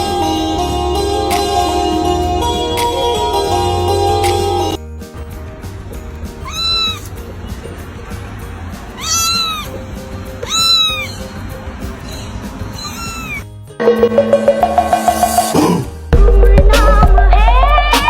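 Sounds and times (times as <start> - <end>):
background music: 0.0 - 18.0
cat meowing: 6.3 - 7.3, 8.7 - 11.5, 12.6 - 13.5.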